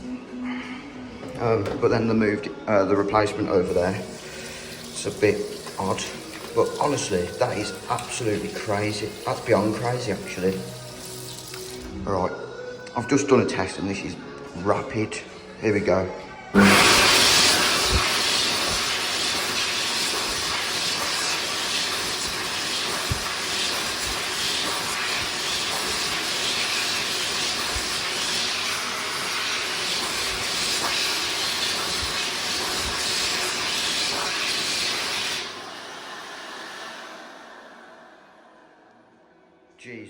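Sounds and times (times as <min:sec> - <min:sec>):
hand dryer blowing air: 0:03.6 - 0:11.9, 0:16.6 - 0:39.0.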